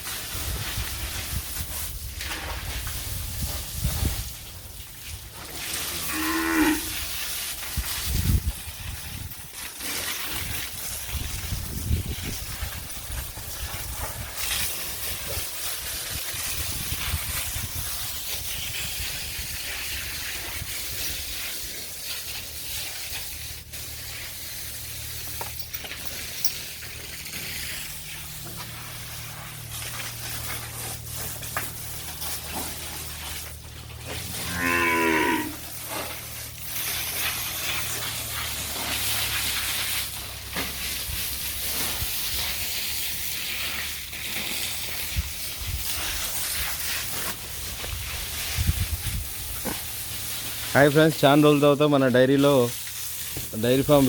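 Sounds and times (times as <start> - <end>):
cattle mooing: 5.6 - 7.0, 34.1 - 35.8.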